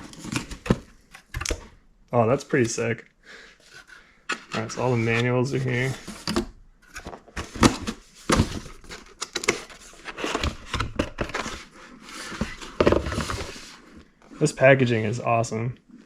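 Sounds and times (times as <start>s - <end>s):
paper and cardboard rustling: 0.0s - 1.0s, 3.6s - 14.4s.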